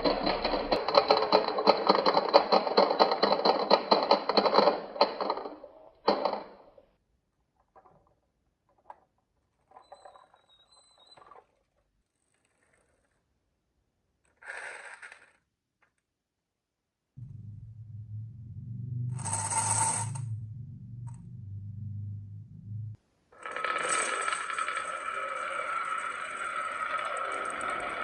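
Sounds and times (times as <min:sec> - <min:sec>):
marbles clattering down wooden slope: 0:00.0 - 0:06.6, 0:23.4 - 0:28.0.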